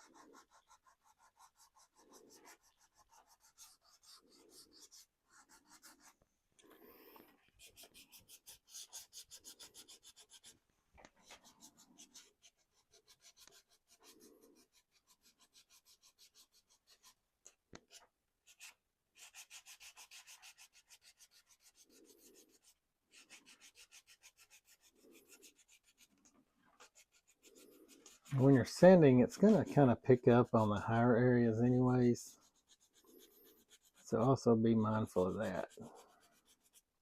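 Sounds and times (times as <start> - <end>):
hand sanding with sandpaper: 0.0 - 6.2, 7.5 - 10.6, 11.2 - 17.2, 17.9 - 37.0.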